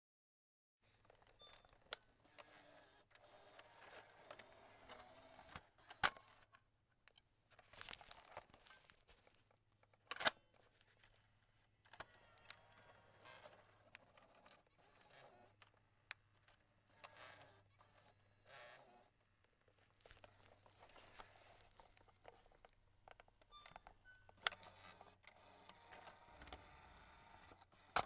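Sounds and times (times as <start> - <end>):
cassette eject clicks: 9.9 - 10.4.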